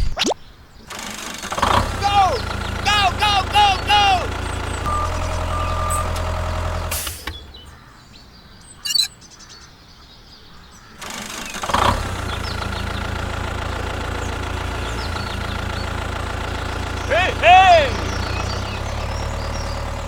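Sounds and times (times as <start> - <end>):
engine starting up: 0.8 - 9.1, 10.9 - 20.0
engine running with low drone: 1.0 - 8.0, 11.0 - 20.0
faint bird chirps: 4.8 - 10.9.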